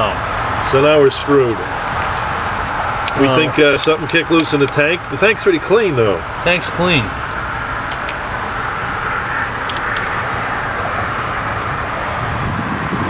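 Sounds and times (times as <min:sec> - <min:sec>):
traffic passing on busy road: 0:00.0 - 0:13.0.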